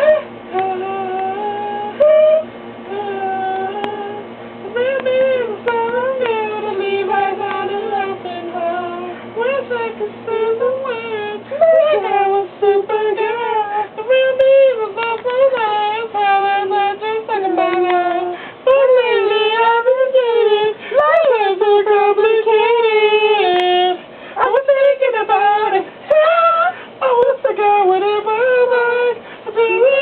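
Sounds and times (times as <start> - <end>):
faint low hum: 0.0 - 30.0
high-pitched voice singing: 9.6 - 12.4.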